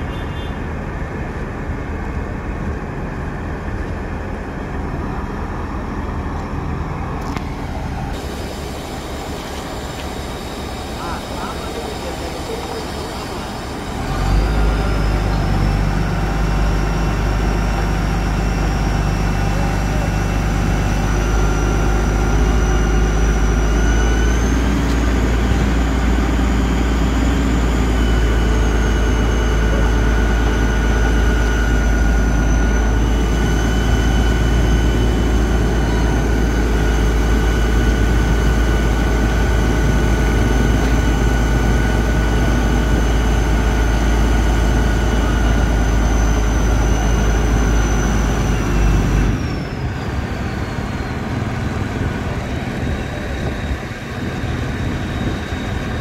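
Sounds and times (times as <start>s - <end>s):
engine running with low rumble: 0.0s - 56.0s
high engine whine: 0.0s - 56.0s.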